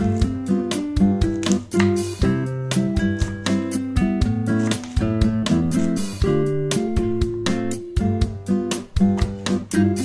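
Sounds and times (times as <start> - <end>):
acoustic guitar strumming: 5.3 - 10.0.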